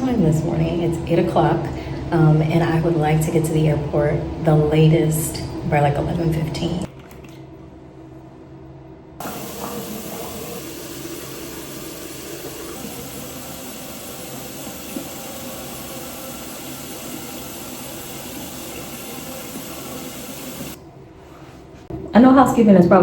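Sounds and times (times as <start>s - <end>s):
shower water running: 9.2s - 20.8s.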